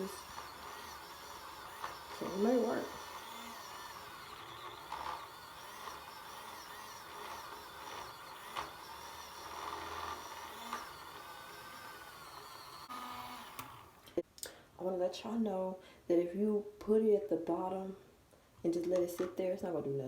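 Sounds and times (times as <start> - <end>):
small motor whirring: 0.0 - 14.2.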